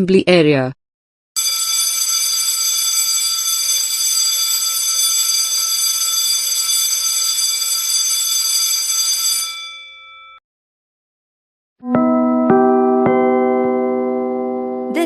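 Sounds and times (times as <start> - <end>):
electric school bell ringing: 1.4 - 10.4.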